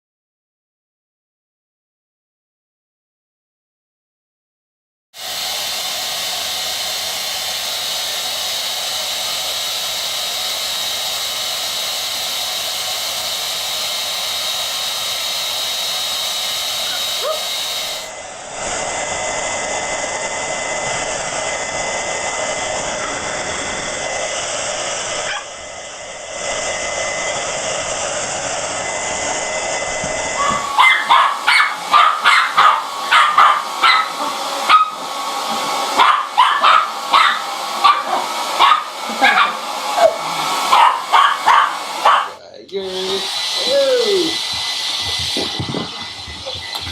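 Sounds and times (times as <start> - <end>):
hair dryers blowing with whine: 5.2 - 46.9
dog barking rapidly: 16.8 - 17.6, 25.2 - 25.5, 30.4 - 42.4.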